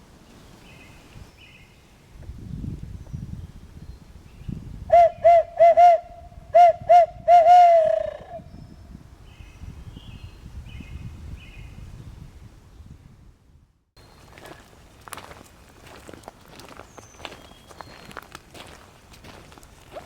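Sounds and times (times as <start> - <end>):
faint songbird chirps: 0.2 - 4.8, 8.4 - 11.9, 14.0 - 20.0
owl hooting: 4.9 - 8.5.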